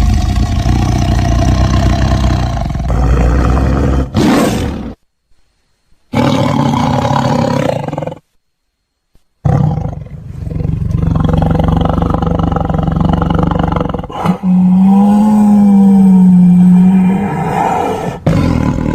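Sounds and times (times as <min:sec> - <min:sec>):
tiger roaring: 0:00.0 - 0:05.0, 0:09.4 - 0:18.9.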